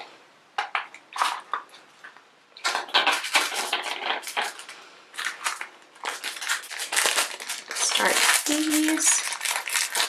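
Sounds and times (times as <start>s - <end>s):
plastic wrapping crinkling: 0.7s - 10.0s.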